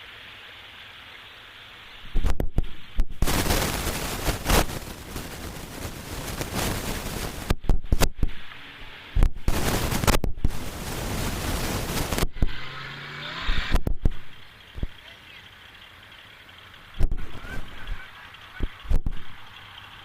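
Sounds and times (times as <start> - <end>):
wind gusting on microphone: 2.0 - 15.0, 17.0 - 19.5.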